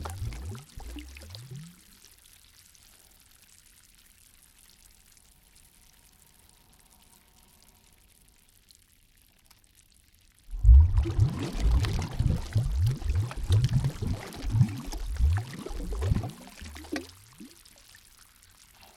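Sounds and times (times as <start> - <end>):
water pouring and splashing: 0.0 - 2.4, 10.5 - 18.9
faint water ambience: 0.0 - 18.9.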